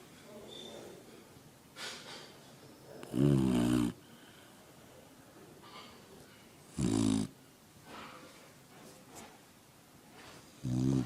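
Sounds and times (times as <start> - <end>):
person snoring: 3.1 - 4.0, 10.6 - 11.0.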